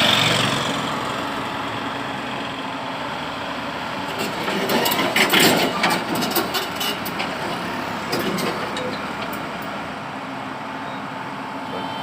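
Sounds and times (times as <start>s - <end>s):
diesel engine running: 0.0s - 12.0s
metal clanks and knocks: 4.2s - 9.4s.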